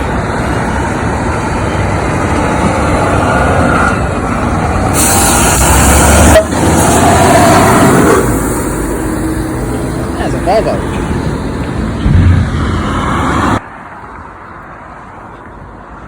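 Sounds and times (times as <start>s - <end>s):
truck driving past: 0.0s - 15.2s
burst of air hiss: 4.9s - 6.0s.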